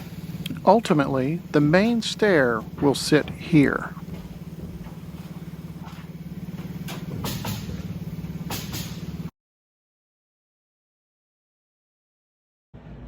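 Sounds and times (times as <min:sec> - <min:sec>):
engine running with even throb: 0:00.0 - 0:09.3, 0:12.8 - 0:13.0
sharp knocks: 0:01.8 - 0:09.2.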